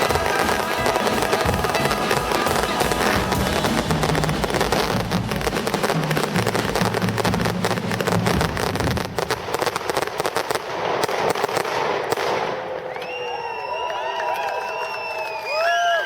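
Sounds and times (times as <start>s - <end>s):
people cheering: 0.0s - 6.9s, 12.6s - 16.0s
fireworks crackling: 0.0s - 13.2s.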